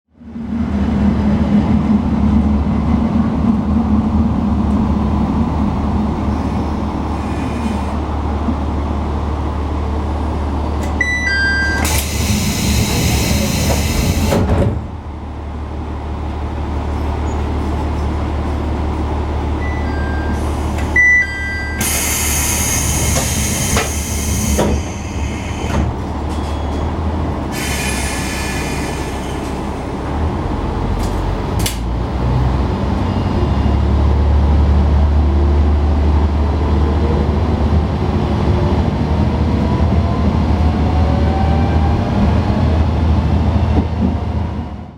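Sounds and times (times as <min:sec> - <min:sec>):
railcar engine idling: 0:00.2 - 0:41.8
doors sliding with air hiss: 0:11.8 - 0:14.7.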